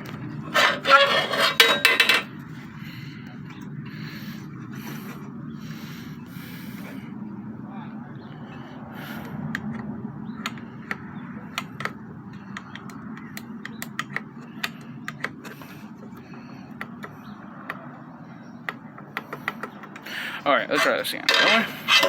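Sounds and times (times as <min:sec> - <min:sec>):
steady low hum: 0:00.0 - 0:19.0
metal tool clicks and taps: 0:09.5 - 0:15.6, 0:16.7 - 0:17.9, 0:18.6 - 0:20.0.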